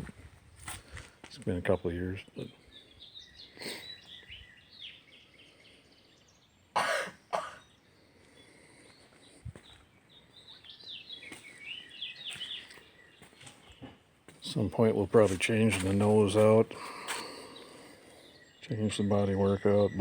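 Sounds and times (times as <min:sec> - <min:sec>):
small birds chirping: 0:00.6 - 0:20.0
person coughing: 0:06.8 - 0:07.6.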